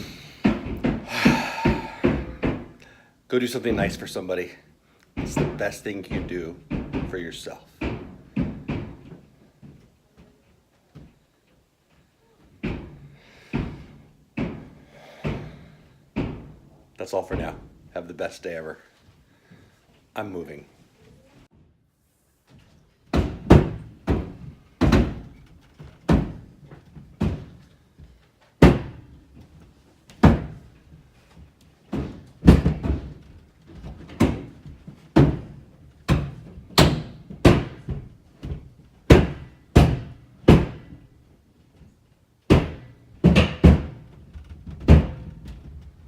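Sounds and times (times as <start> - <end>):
heavy thuds and knocks on roof: 0.4 - 2.8, 5.2 - 9.2, 12.6 - 16.7, 23.1 - 27.8, 28.6 - 29.1, 30.2 - 31.0, 31.9 - 41.1, 42.5 - 46.0.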